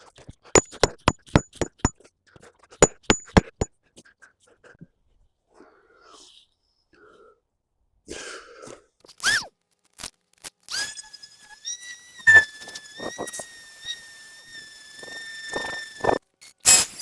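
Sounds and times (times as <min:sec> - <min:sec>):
hammer strikes on steel: 0:00.6 - 0:01.9, 0:02.8 - 0:03.7.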